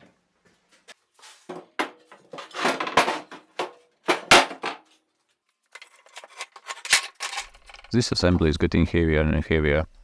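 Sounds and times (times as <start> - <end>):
metal parts clanking: 1.8 - 4.8, 5.7 - 8.5.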